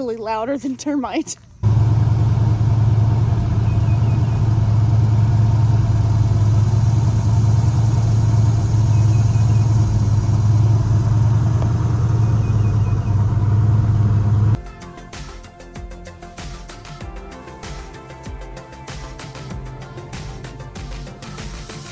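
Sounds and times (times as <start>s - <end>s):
deep exhaust drone: 1.6s - 14.6s.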